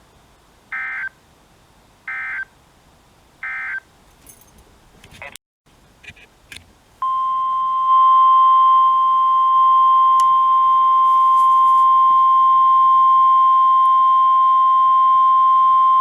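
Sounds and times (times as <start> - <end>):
steady high alarm tone: 7.0 - 16.0.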